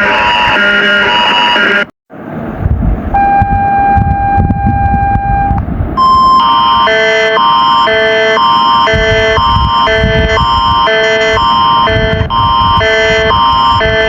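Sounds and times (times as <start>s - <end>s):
low rumble: 2.2s - 6.9s, 8.9s - 14.0s
higher tone: 3.1s - 14.0s.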